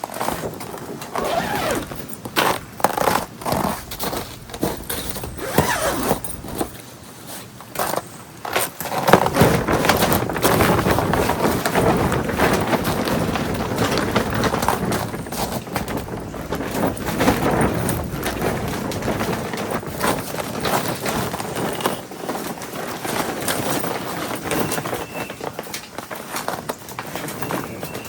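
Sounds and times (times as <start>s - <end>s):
crunching footsteps: 1.2s - 6.8s.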